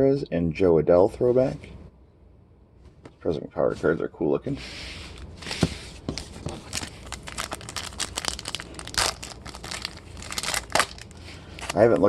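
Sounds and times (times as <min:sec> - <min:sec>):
plastic wrapper crinkling: 0:05.6 - 0:12.0
wrapper ripping: 0:06.2 - 0:12.0.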